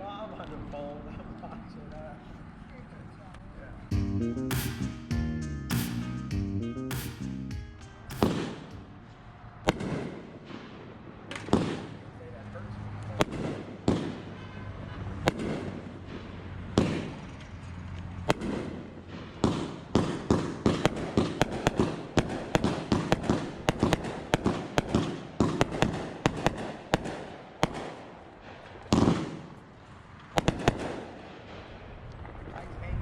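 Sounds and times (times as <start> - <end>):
firework bangs: 8.1 - 8.8, 9.7 - 12.0, 13.2 - 14.4, 15.2 - 17.2, 18.2 - 32.4
fireworks cracking and popping: 8.1 - 8.8, 18.3 - 18.8, 19.4 - 29.6, 30.2 - 32.6.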